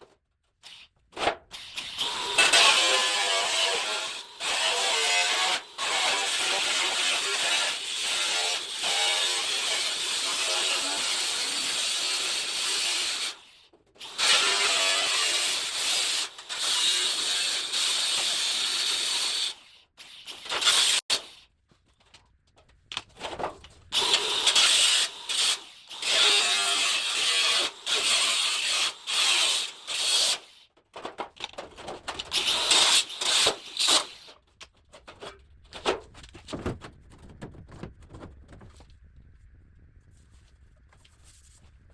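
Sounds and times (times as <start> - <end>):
power tool cutting sheet metal: 1.5 - 21.4, 24.0 - 30.6, 32.3 - 34.3.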